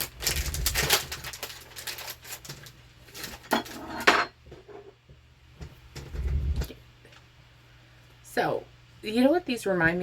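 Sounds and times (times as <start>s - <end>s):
candy pieces rattling in a bowl: 0.0s - 3.8s.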